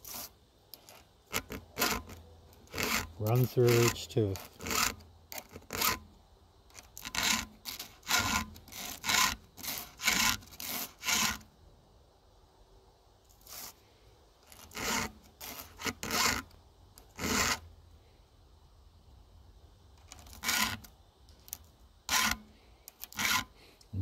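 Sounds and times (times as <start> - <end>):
file rasping on saw chain: 0.0 - 6.0, 6.7 - 11.4, 14.5 - 17.6, 20.1 - 20.9, 22.1 - 23.5.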